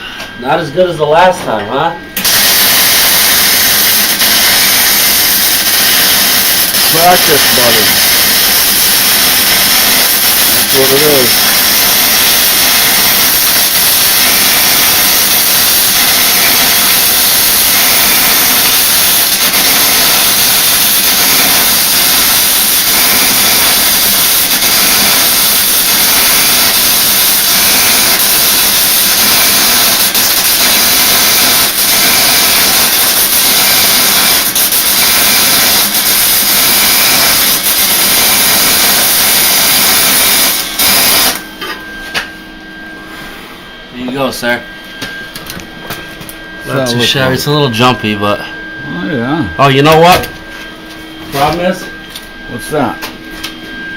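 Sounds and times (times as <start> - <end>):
welding arc crackling and hissing: 2.2 - 41.8.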